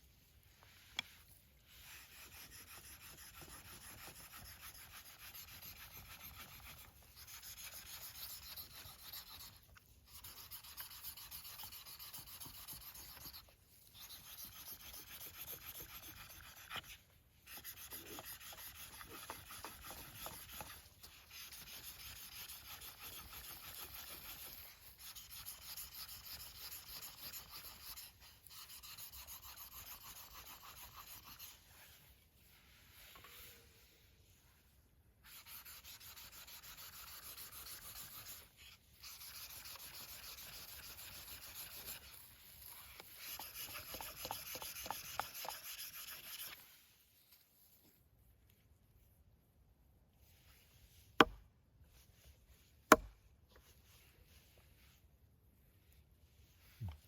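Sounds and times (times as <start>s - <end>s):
blade scraping on whetstone: 2.0s - 31.6s, 39.1s - 46.6s.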